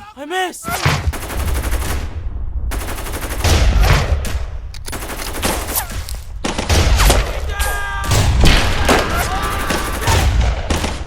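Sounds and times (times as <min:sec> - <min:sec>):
low rumble: 0:01.5 - 0:05.1.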